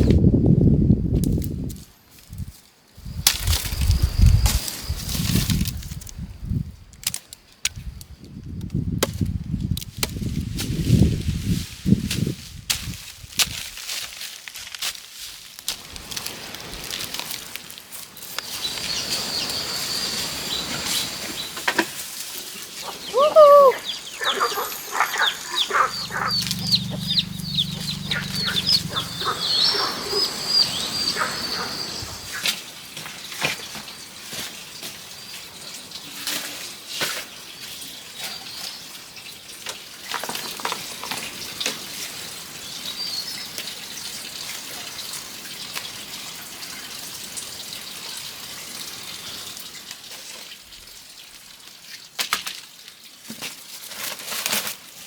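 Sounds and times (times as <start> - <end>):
birds chirping high: 18.4 - 21.6, 22.5 - 32.9
low hum: 24.3 - 31.4.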